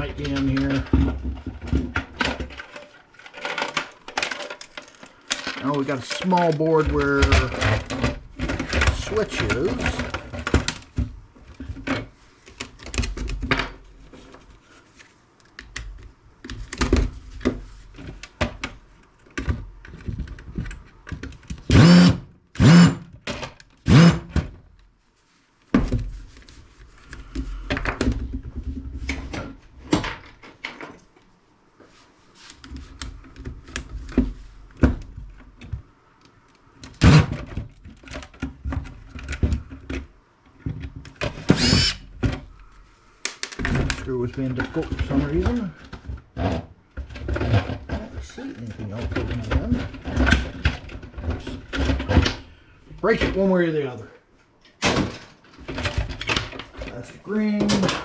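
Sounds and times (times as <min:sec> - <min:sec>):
plastic case knocking and clattering: 0:00.0 - 0:02.8
power driver motor whirring: 0:21.7 - 0:23.0, 0:23.9 - 0:24.3, 0:37.0 - 0:37.3, 0:41.5 - 0:42.0.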